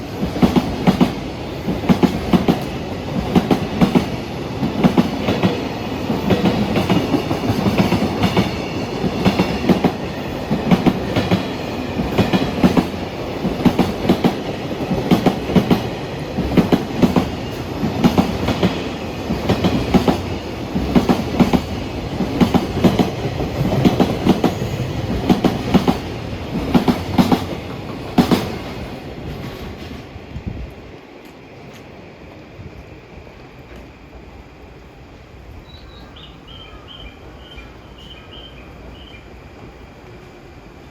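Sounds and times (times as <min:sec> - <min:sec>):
train wheels clacking on rails: 0:00.0 - 0:30.2
train rumble: 0:00.0 - 0:40.9.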